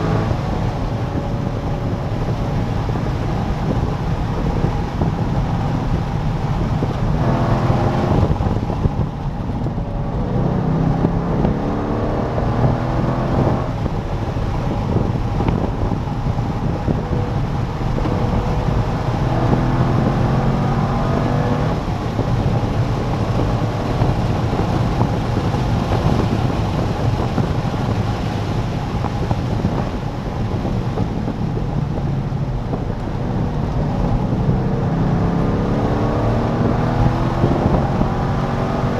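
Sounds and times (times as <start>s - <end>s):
car engine revving: 0.0s - 38.9s
wind and road noise: 0.0s - 38.9s.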